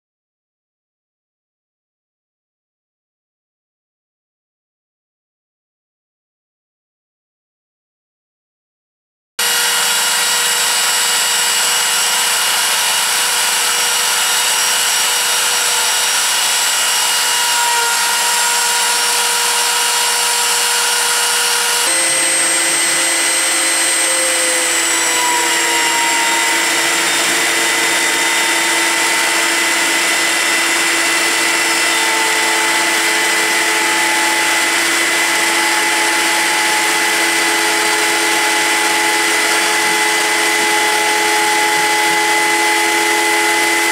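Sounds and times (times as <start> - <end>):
router spindle cutting wood: 9.4 - 43.9.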